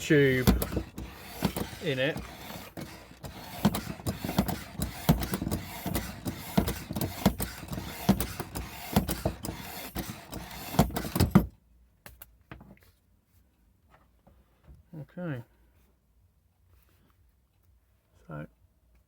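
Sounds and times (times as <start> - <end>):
bicycle pump strokes: 0.0 - 11.4.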